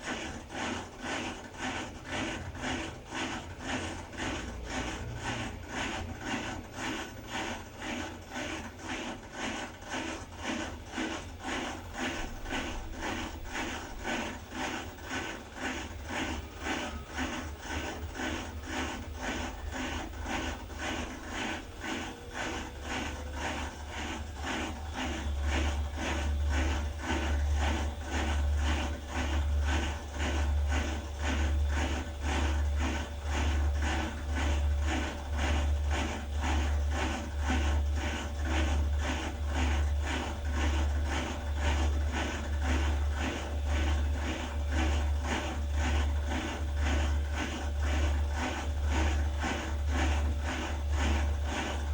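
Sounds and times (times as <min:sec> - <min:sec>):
washer-dryer low hum: 0:00.0 - 0:51.9
mechanical rubbing and clicking: 0:00.5 - 0:51.9.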